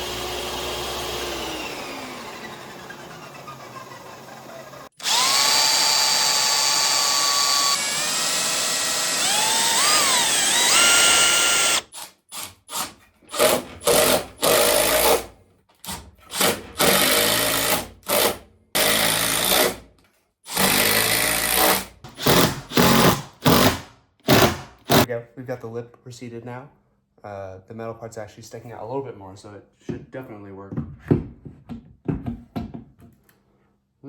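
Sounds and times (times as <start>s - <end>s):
power tool motor cutting wood: 0.0s - 12.1s, 20.5s - 25.1s.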